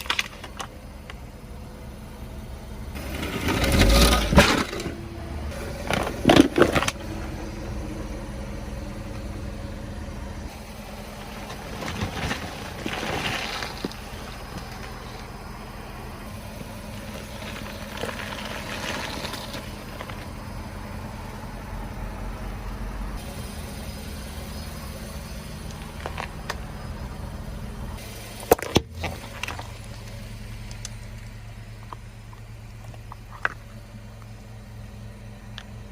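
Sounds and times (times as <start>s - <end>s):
steady low hum: 0.0s - 35.9s
tyre crushing objects: 5.7s - 7.1s, 11.4s - 15.3s.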